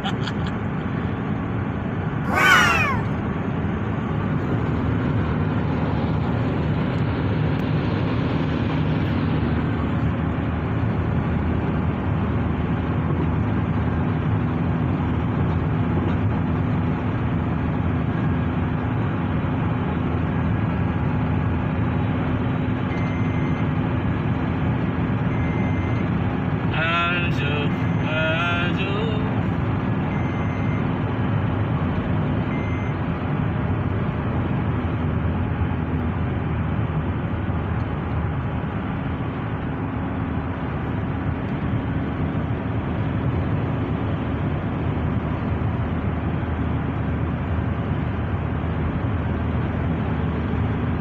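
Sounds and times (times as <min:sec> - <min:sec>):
car road and engine noise: 0:00.0 - 0:51.0
high-pitched squeal falling: 0:02.3 - 0:03.2.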